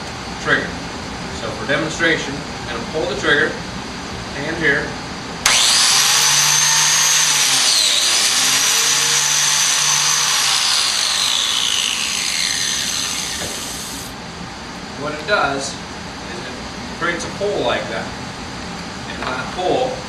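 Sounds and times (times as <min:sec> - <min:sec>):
biscuit joiner motor whining: 0:05.4 - 0:14.1.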